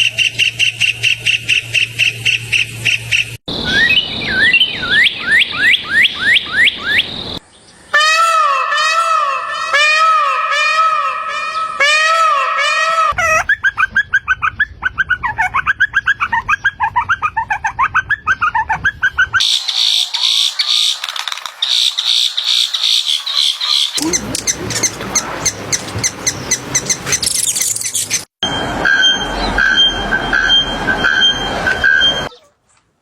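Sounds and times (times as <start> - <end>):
bird-like chirping: 0.0 - 7.9, 13.2 - 28.3.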